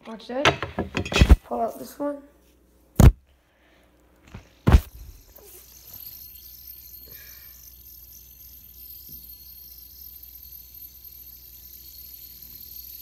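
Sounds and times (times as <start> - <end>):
fidget spinner bearing whirring: 4.2 - 13.0.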